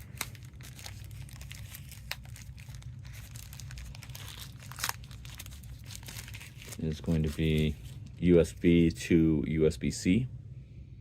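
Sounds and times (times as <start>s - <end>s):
packaging crinkling and rustling: 0.0s - 8.6s
steady low hum: 0.0s - 11.0s.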